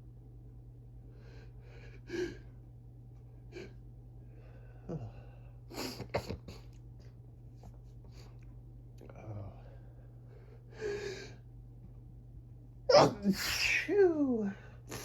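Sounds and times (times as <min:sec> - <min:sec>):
low steady hum: 0:00.0 - 0:15.0
person sneezing: 0:12.9 - 0:14.0.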